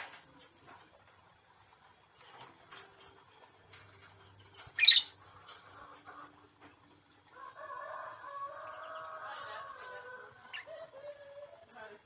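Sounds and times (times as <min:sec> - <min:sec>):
lovebird shrill call: 0:04.8 - 0:05.1.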